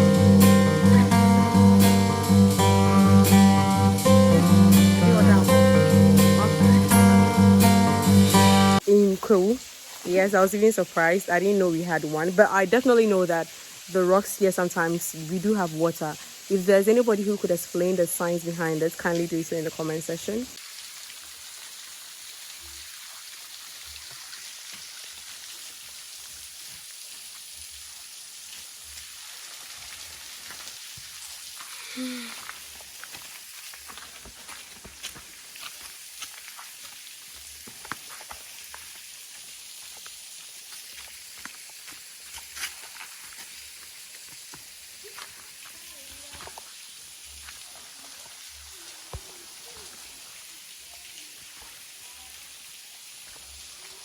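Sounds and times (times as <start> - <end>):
water drips and splashes: 8.8 - 54.0
waterfall spattering on rock: 29.6 - 52.5.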